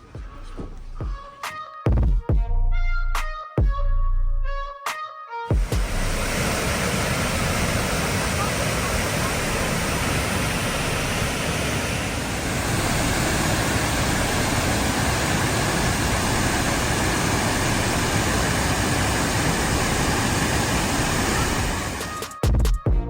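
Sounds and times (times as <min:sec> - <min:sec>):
waterfall rushing: 0:05.6 - 0:22.2.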